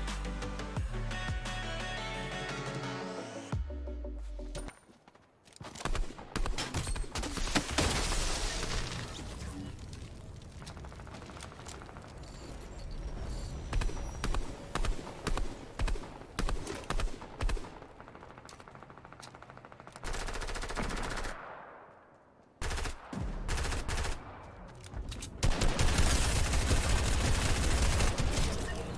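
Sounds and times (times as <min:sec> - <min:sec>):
video game gunfire: 0:10.4 - 0:28.9.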